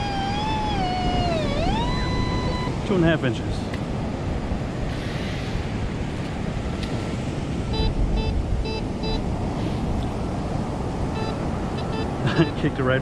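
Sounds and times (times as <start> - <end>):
metal detector beeps: 0.0 - 2.8, 7.7 - 9.2, 11.1 - 12.6
wind: 0.0 - 13.0.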